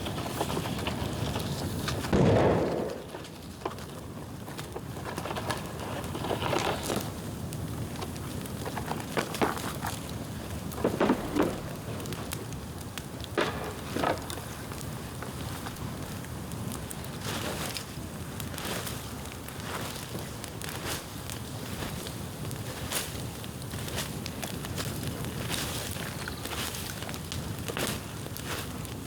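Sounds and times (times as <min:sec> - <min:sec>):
bamboo bonfire crackling: 0:00.0 - 0:29.0
sharp pops: 0:10.6 - 0:15.8.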